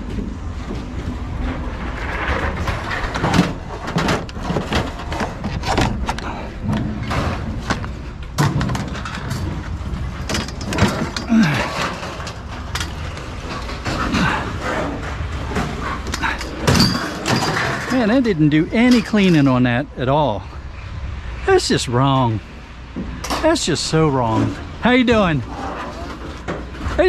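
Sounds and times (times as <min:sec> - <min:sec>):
steady low rumble: 0:00.0 - 0:27.0
scrap metal clanking: 0:01.8 - 0:19.7.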